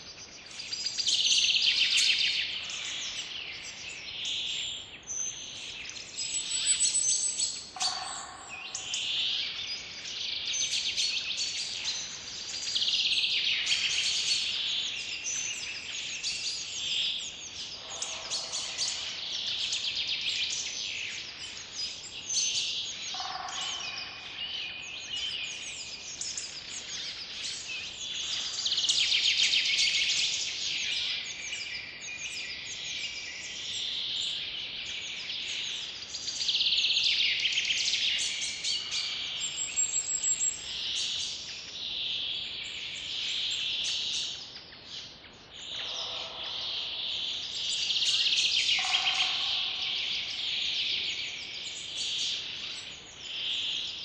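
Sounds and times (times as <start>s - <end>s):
songbirds chirping and trilling: 0.0s - 54.0s
lower-pitched bird calls: 7.6s - 9.2s, 23.1s - 24.4s, 45.7s - 50.7s.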